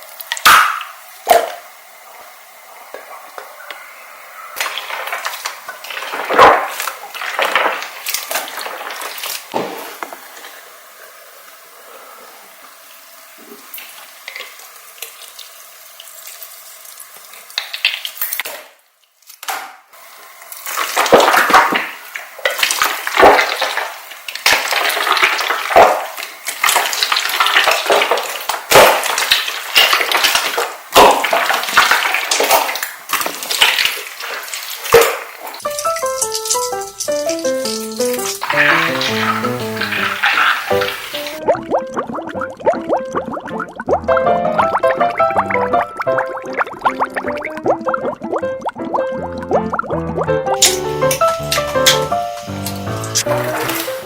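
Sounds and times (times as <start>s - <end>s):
slime squelching and crackling: 31.0s - 54.0s.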